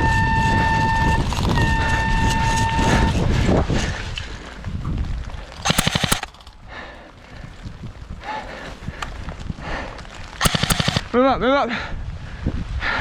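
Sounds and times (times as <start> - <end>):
airsoft gun full-auto burst: 5.6 - 6.4, 10.4 - 11.1.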